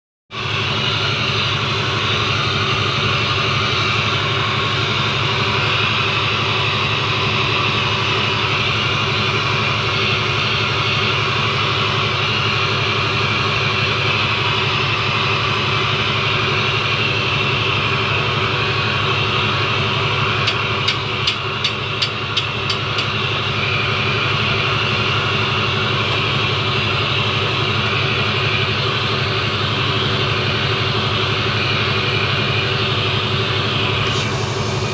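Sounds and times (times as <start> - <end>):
motor humming: 33.3 - 34.9.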